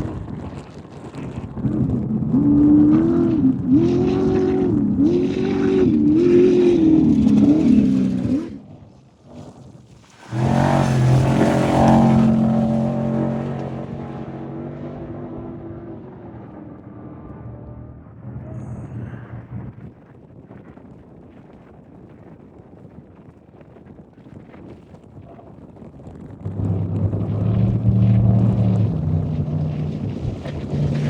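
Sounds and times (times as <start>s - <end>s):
race engine revving: 1.7s - 8.6s, 10.3s - 19.7s, 26.4s - 31.0s
race engine passing away: 10.3s - 19.8s, 26.4s - 31.0s.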